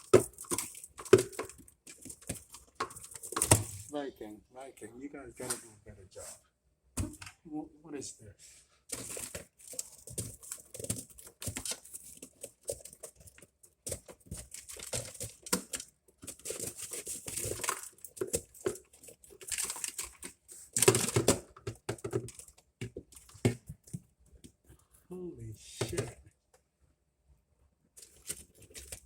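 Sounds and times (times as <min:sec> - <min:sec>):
wrapping crinkling and tearing: 0:14.3 - 0:21.3.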